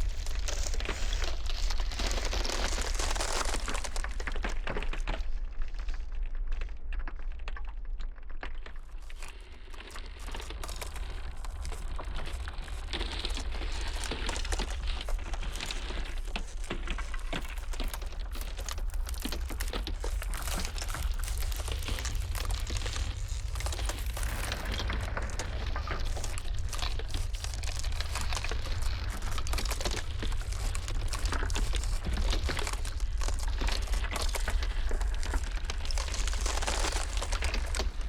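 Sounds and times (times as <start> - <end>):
ice cracking and popping: 0.0 - 38.0
steady low rumble: 17.9 - 38.0.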